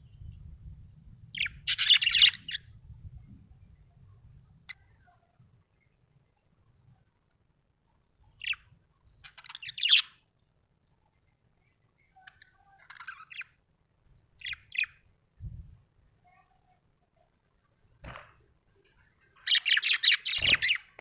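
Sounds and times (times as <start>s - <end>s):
budgerigar chirping and chattering: 1.4s - 2.7s, 8.3s - 10.2s, 12.1s - 13.6s, 14.4s - 15.0s, 19.4s - 20.9s.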